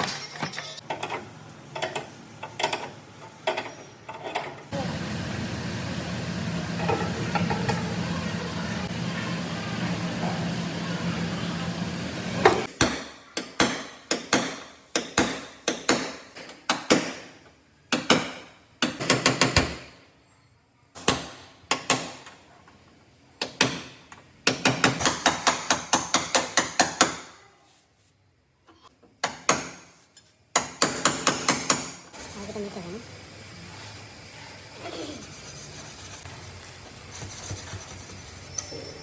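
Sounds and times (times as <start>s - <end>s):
machine hum: 4.7s - 12.7s.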